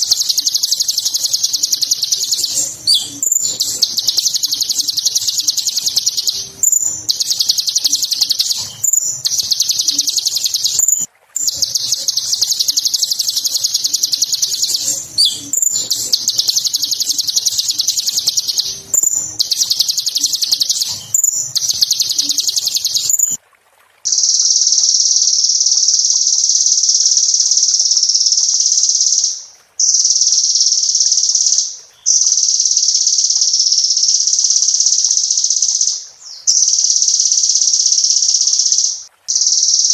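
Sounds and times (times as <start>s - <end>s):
sunbird singing trills: 0.0s - 23.4s.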